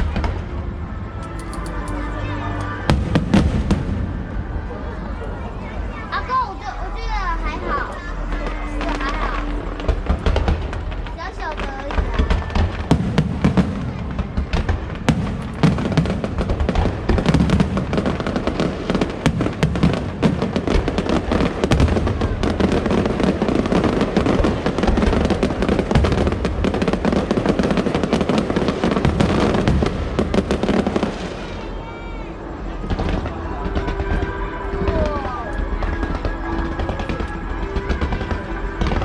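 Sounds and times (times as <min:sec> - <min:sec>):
fireworks crackling and banging: 0:00.0 - 0:39.0
show music: 0:00.2 - 0:11.6.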